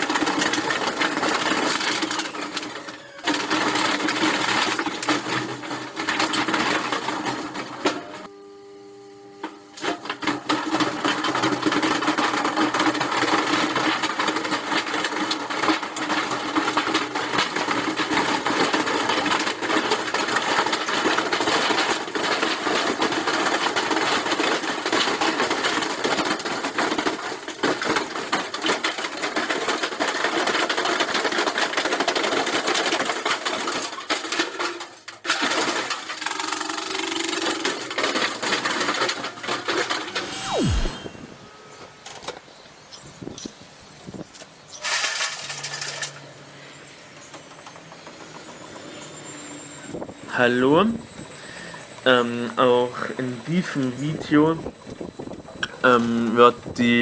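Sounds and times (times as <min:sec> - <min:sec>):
washing machine clattering and banging: 0:00.0 - 0:08.1, 0:09.8 - 0:40.4
washing machine motor hum: 0:36.2 - 0:42.0.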